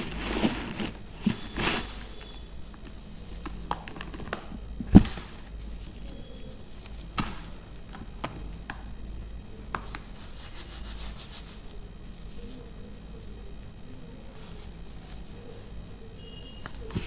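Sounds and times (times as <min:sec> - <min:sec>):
baking soda crunching and crumbling: 0:00.0 - 0:08.3
fine crackling: 0:00.0 - 0:08.7.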